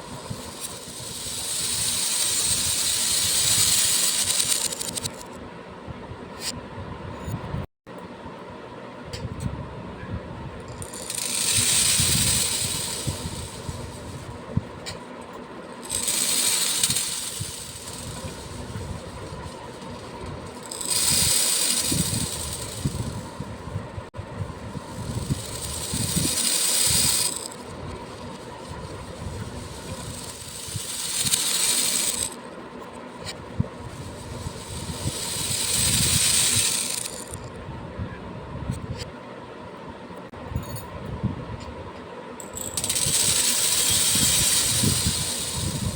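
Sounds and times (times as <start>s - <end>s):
small beads pouring: 0.0s - 5.3s, 10.7s - 14.3s, 15.7s - 23.4s, 24.8s - 32.5s, 33.8s - 37.5s, 42.6s - 45.9s
single beads clicking: 0.1s - 5.3s, 10.7s - 14.2s, 15.8s - 23.2s, 24.9s - 32.4s, 33.2s - 37.5s.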